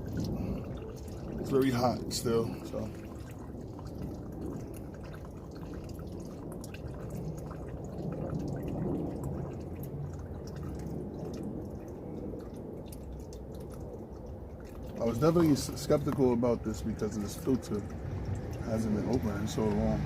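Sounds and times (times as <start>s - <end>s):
oil draining into a pan: 0.0s - 20.0s.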